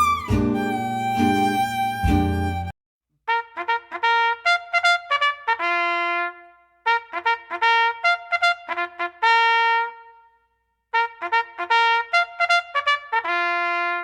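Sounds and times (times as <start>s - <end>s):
solo brass melody: 0.0s - 2.7s.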